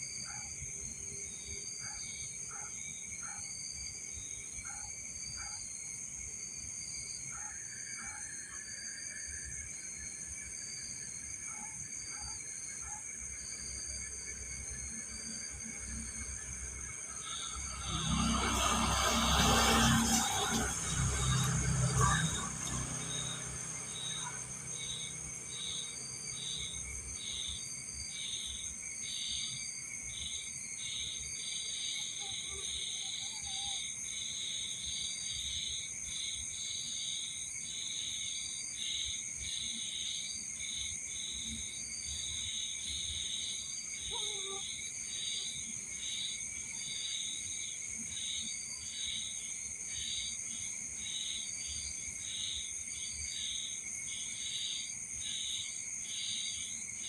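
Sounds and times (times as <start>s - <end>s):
crickets chirping: 0.0s - 57.0s
high-pitched insect drone: 13.6s - 29.5s.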